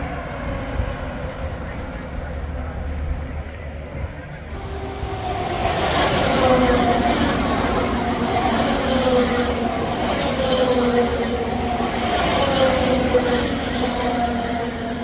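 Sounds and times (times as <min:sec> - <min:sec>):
race cars passing at speed: 0:04.5 - 0:15.0.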